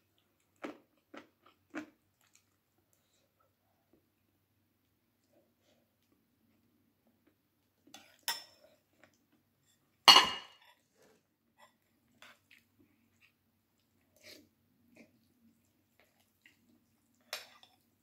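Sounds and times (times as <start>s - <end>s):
utensils clinking against dishes: 10.1s - 10.6s.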